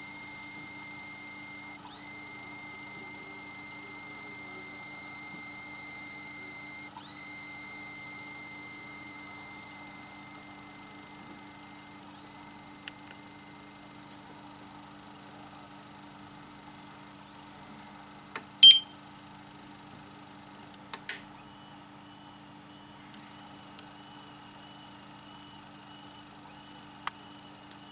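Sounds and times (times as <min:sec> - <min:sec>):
high-pitched whistle: 0:18.6 - 0:18.9
short loud beep: 0:18.6 - 0:18.9.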